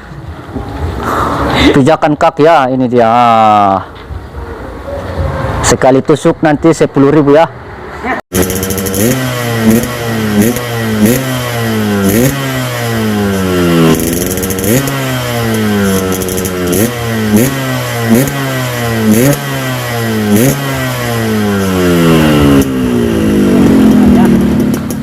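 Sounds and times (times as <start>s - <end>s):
motorcycle engine revving: 8.3s - 25.0s.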